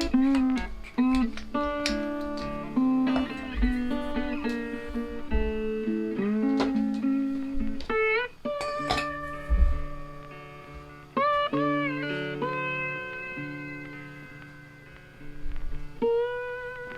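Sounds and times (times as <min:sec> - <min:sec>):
blues electric guitar: 0:00.0 - 0:16.9
soft low thumps: 0:09.4 - 0:10.0.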